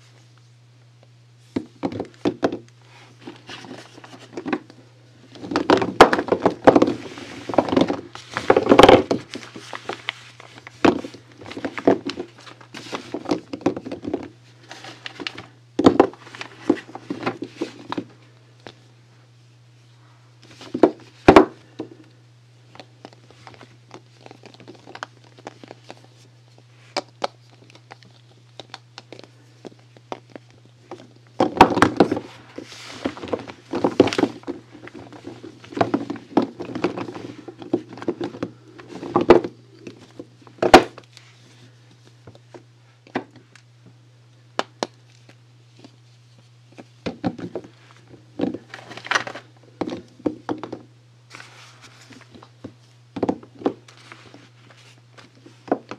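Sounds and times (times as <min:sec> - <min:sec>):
faint low hum: 0:00.0 - 0:55.9
packaging rustling and knocking: 0:01.6 - 0:02.6, 0:05.3 - 0:18.1, 0:20.5 - 0:21.9, 0:26.9 - 0:41.1, 0:48.4 - 0:55.9.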